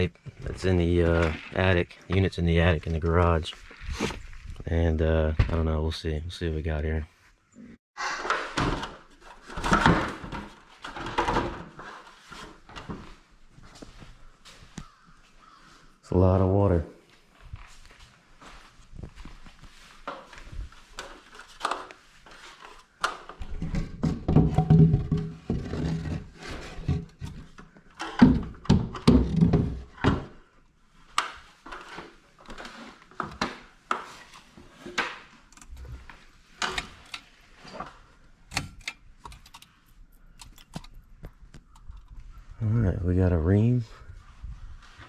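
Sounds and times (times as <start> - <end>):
knocks and thunks of handling: 8.3 - 15.0, 18.5 - 30.4.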